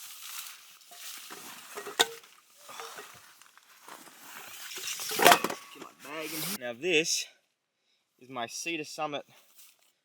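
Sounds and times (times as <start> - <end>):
rustling of camping gear and fabric: 0.0 - 6.6, 9.3 - 10.0.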